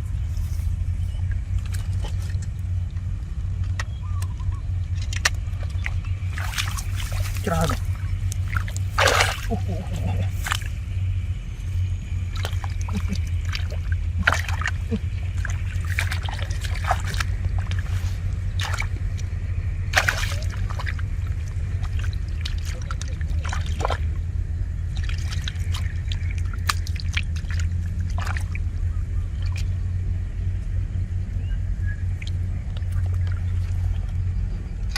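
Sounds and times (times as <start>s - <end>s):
steady low rumble: 0.0s - 34.9s
shallow water splashing: 4.8s - 30.1s, 32.1s - 34.9s.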